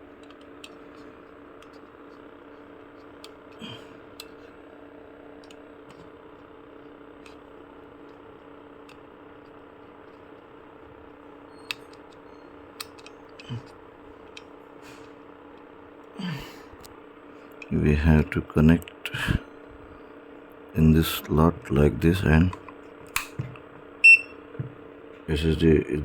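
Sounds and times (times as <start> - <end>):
electrical hum and hiss: 0.0 - 26.0
small parts clicking and tapping: 0.1 - 4.5, 5.4 - 15.7.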